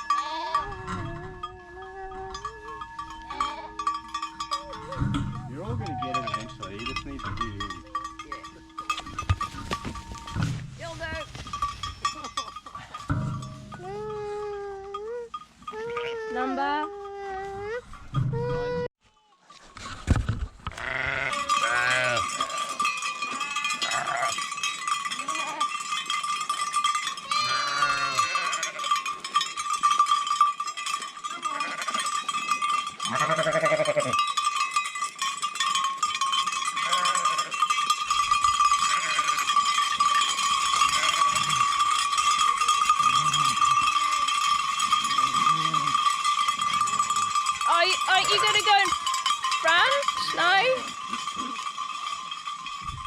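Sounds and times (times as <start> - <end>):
sheep bleating: 0.0 - 1.4, 3.2 - 3.9, 20.7 - 22.5, 23.4 - 24.4, 27.3 - 28.9, 33.1 - 34.2, 36.8 - 37.6, 38.8 - 39.5, 40.8 - 41.7
sheep bells clanging: 0.0 - 19.5, 20.8 - 53.0.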